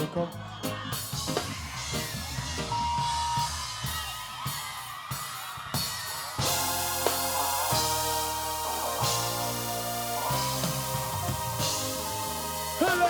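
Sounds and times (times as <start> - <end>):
drum kit: 0.0 - 13.0
bass line: 6.4 - 13.0
held chords: 6.4 - 13.0.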